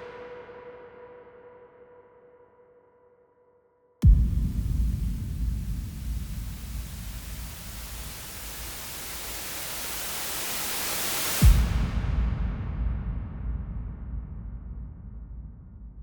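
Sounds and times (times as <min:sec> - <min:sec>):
deep boom hit: 0:04.0 - 0:08.9, 0:11.4 - 0:16.0
low rumble: 0:04.0 - 0:09.6, 0:11.4 - 0:16.0
rising synth hiss riser: 0:04.4 - 0:12.0.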